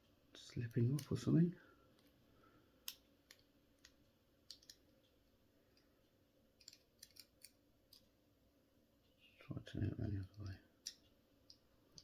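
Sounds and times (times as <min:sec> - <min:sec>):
handcuff lock clicks: 0:06.6 - 0:08.0.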